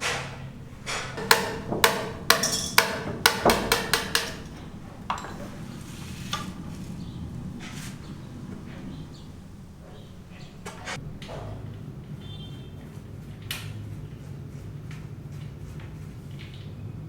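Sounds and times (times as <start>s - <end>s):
sharp ringing knocks: 0.0s - 11.0s.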